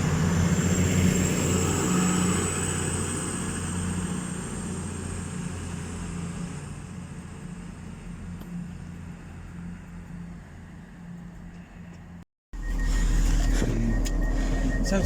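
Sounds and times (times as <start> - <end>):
diesel train engines pulling away: 0.0 - 15.0
thin high whine: 12.6 - 15.0.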